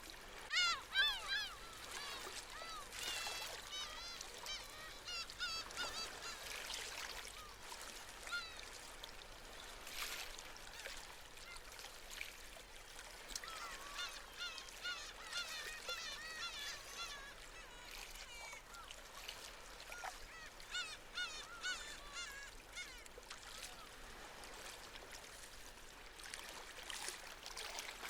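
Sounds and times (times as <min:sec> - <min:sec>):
small waves breaking: 0:00.0 - 0:28.0
seabirds crying: 0:00.4 - 0:08.8, 0:13.4 - 0:24.2.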